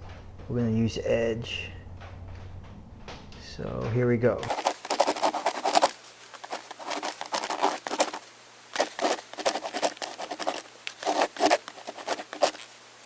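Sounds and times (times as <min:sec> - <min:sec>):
microwave oven humming: 0:00.0 - 0:04.4
crackling and scratching: 0:00.0 - 0:12.8.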